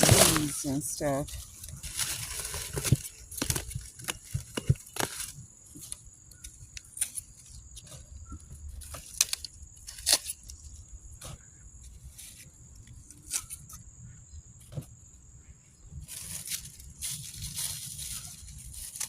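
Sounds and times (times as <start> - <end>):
dry leaves tearing and rustling: 0.0 - 8.0, 8.7 - 10.8, 12.1 - 13.8, 16.0 - 19.0.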